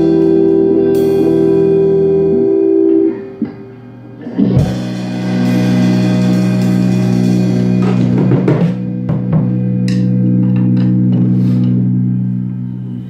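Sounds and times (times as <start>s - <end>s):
ringing guitar chord: 4.3s - 13.0s
drum hits: 4.6s - 10.8s.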